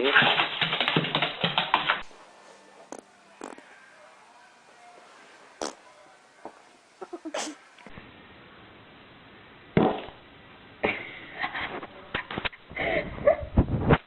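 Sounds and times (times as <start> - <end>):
farting: 5.6 - 5.8.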